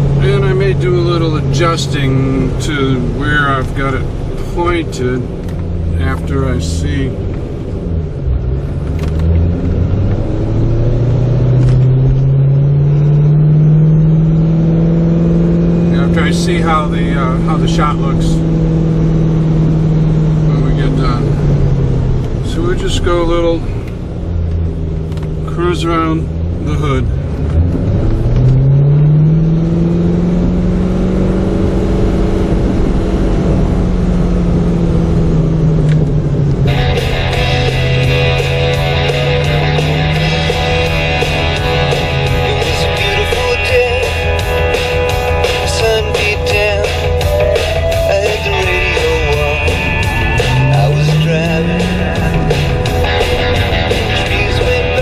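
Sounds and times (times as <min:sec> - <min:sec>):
car engine accelerating: 0:00.0 - 0:55.0
road rumble: 0:00.0 - 0:55.0.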